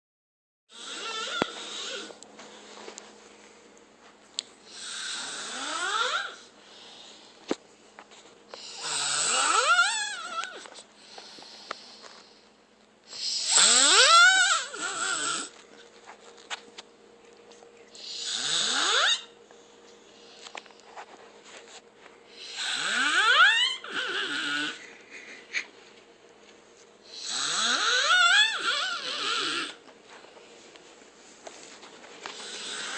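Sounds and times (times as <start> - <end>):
rasping whistling snores: 0.8 - 2.1, 13.2 - 15.5, 18.0 - 19.4, 22.4 - 24.8, 27.1 - 29.8.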